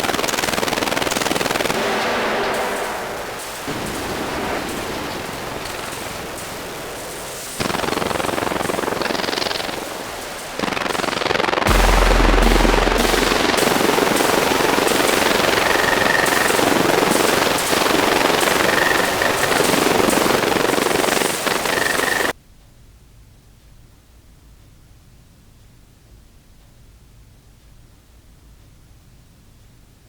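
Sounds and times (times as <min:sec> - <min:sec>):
fireworks fizzing and crackling: 0:01.3 - 0:22.3
deep boom: 0:11.7 - 0:15.8.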